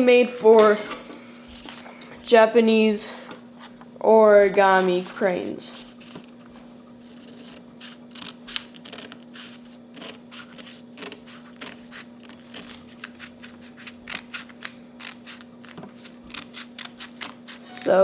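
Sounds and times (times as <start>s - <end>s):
faint steady hum: 0.0s - 18.0s
paper crackling: 4.6s - 17.7s.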